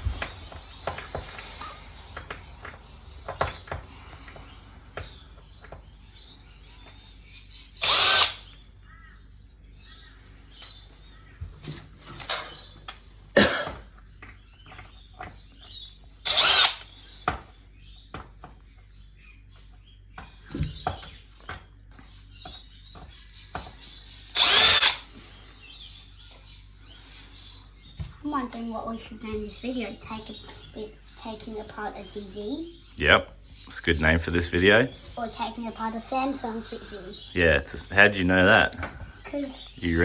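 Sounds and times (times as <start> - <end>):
cordless electric screwdriver running: 7.8 - 8.5, 16.2 - 16.9, 24.3 - 25.1
clicks and knocks of tools: 11.6 - 13.0.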